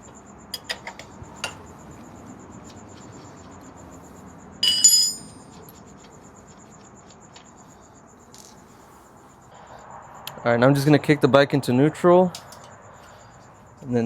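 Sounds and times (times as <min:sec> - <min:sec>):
wrenches clinking together: 0:04.6 - 0:05.4.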